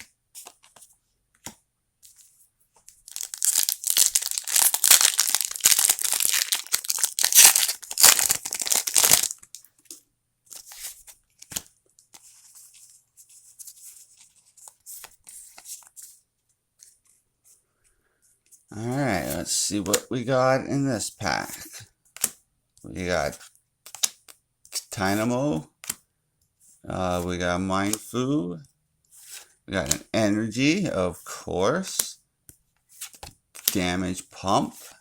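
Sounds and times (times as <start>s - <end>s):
foil wrapper tearing and crinkling: 3.1s - 9.5s.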